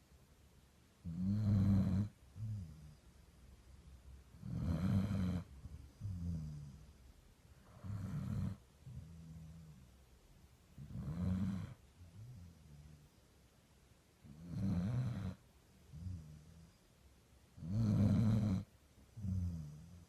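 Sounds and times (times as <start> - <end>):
small dog snoring: 1.0 - 3.0, 4.4 - 6.9, 7.6 - 9.9, 10.8 - 13.0, 14.2 - 16.8, 17.6 - 20.0.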